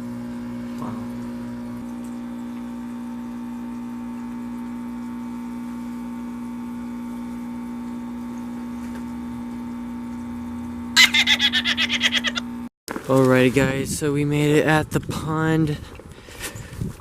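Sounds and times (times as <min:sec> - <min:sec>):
aquarium pump humming: 0:00.0 - 0:12.7.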